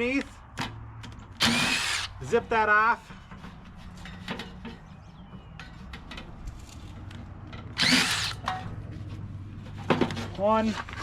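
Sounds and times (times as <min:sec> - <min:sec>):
power drill spinning: 0:01.4 - 0:02.2, 0:07.8 - 0:08.4.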